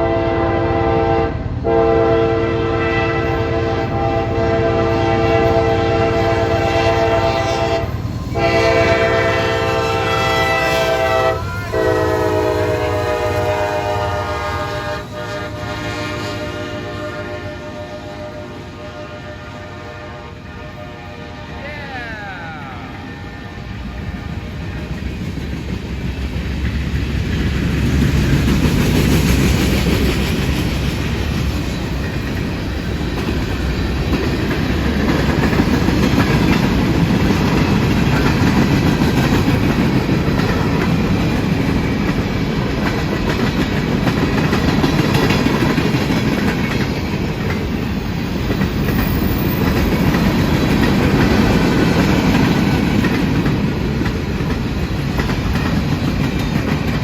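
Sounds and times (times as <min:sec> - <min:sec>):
train wheels clicking over rail joints: 0:23.7 - 0:57.0.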